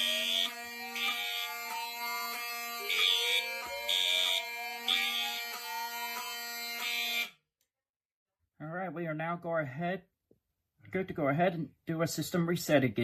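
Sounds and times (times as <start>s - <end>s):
continuous fire alarm horn: 0.0s - 7.5s
fire alarm horn blasts: 0.0s - 7.5s.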